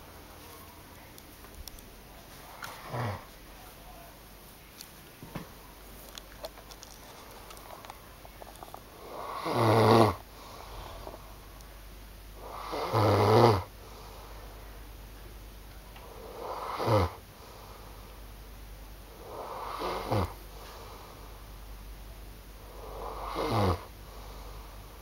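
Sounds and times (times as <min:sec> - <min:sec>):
loud snoring: 0:02.8 - 0:03.3, 0:09.0 - 0:11.1, 0:12.4 - 0:13.7, 0:16.0 - 0:17.2, 0:19.2 - 0:20.4, 0:22.6 - 0:24.4.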